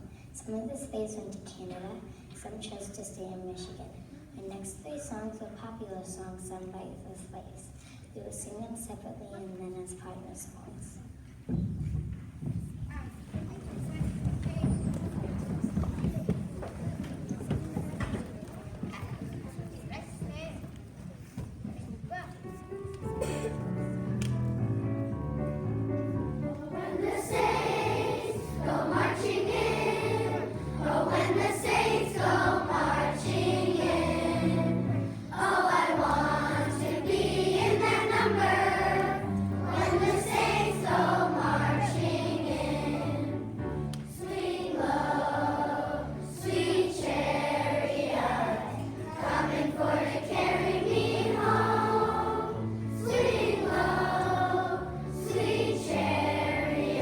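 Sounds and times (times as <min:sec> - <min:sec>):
choir singing in unison: 0:26.8 - 0:57.0.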